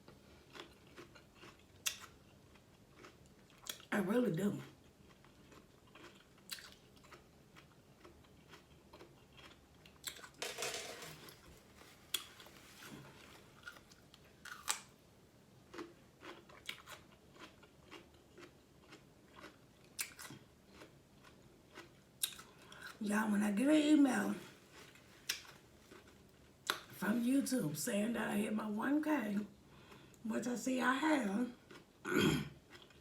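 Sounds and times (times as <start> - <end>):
chewing and biting: 0.0 - 3.9, 4.8 - 10.4, 13.2 - 14.9, 15.7 - 23.0, 24.7 - 26.9, 31.6 - 32.0, 32.6 - 33.0.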